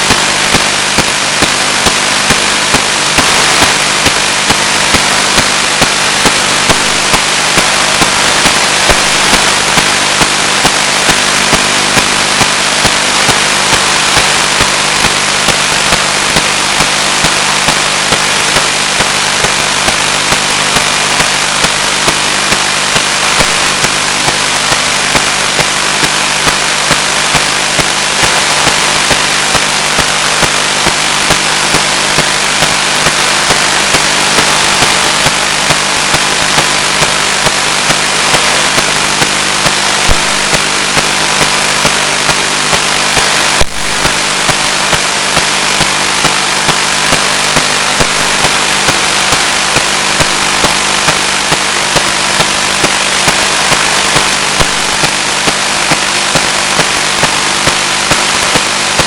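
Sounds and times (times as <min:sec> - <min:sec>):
static hiss: 0:00.0 - 0:59.0.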